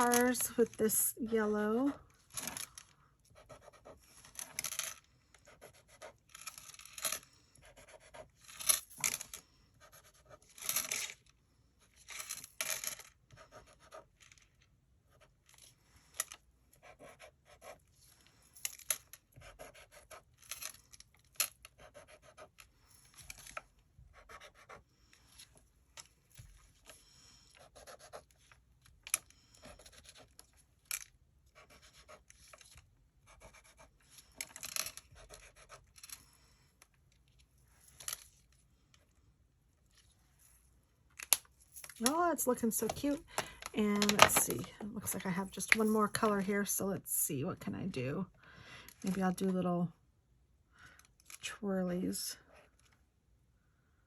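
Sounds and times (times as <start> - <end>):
pen scratching on paper: 3.3 - 4.6, 5.4 - 6.7, 7.6 - 8.5, 9.8 - 10.6, 13.3 - 14.1, 16.7 - 17.9, 19.3 - 20.4, 21.6 - 22.7, 24.1 - 24.9, 27.5 - 28.6, 31.5 - 34.0, 35.0 - 36.0.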